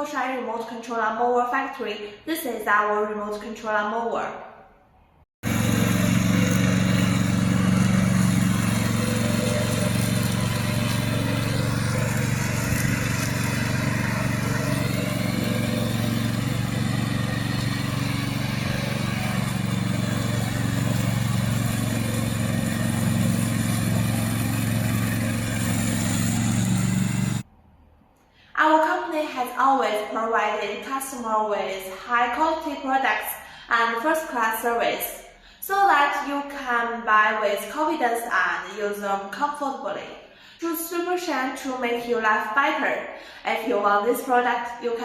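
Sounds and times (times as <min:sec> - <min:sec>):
mower engine humming: 0:05.4 - 0:27.4.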